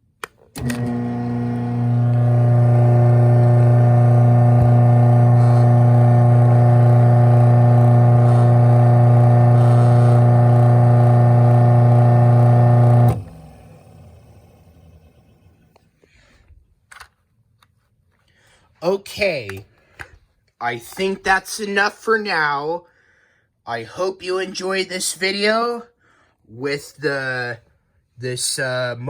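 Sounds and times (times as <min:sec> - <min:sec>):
click: 0:00.2 - 0:02.3
garage door opener motor hum: 0:00.4 - 0:15.8.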